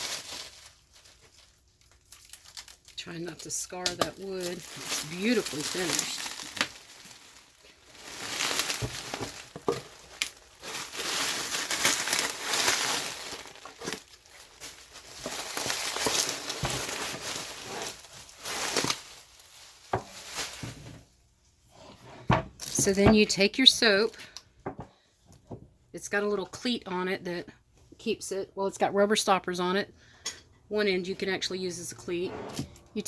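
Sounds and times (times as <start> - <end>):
packing material rustling: 0.0 - 21.2.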